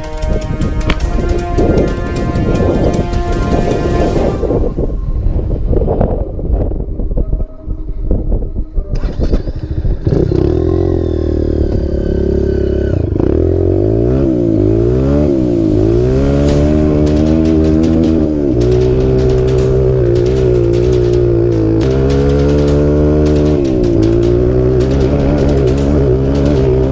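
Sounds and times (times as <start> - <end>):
dirt bike engine revving: 9.0 - 26.9.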